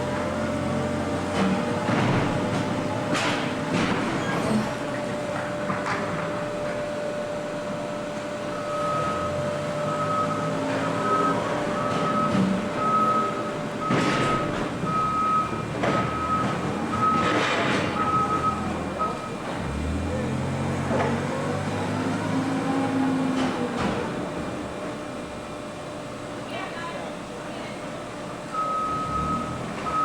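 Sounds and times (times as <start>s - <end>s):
reversing alarm beeping: 7.3s - 19.5s, 28.5s - 30.0s.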